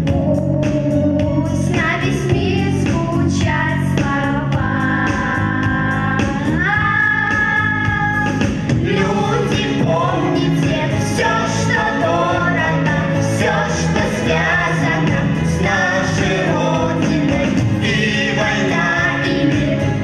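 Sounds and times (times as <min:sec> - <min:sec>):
band accompaniment: 0:00.0 - 0:20.0.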